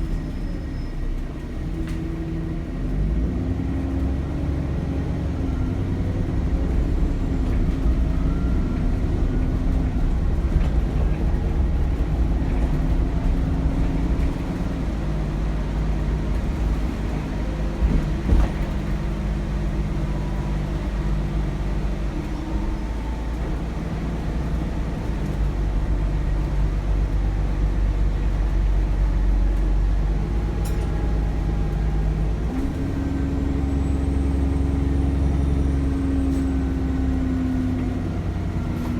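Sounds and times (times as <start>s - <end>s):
bus diesel engine running: 0.0s - 38.9s
bus bumps: 6.3s - 26.7s.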